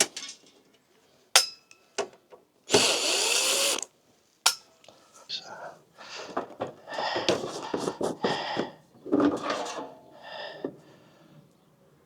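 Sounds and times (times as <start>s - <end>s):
power drill running: 2.7s - 3.9s.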